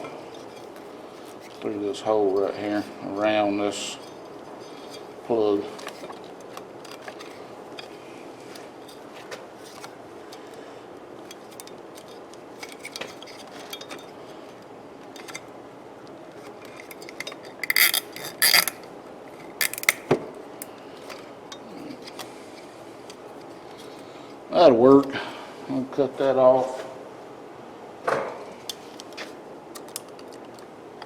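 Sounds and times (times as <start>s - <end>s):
plastic parts clicking: 16.7s - 18.9s, 19.6s - 20.2s
ratcheting clicks: 16.7s - 18.9s, 19.6s - 20.1s.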